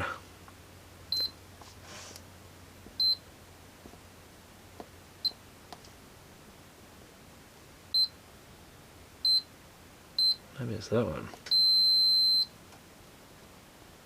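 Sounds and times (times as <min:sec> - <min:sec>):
continuity tester beeping: 0:01.1 - 0:01.4, 0:03.0 - 0:03.2, 0:07.9 - 0:08.2, 0:09.2 - 0:09.5, 0:10.2 - 0:10.4, 0:11.4 - 0:12.5.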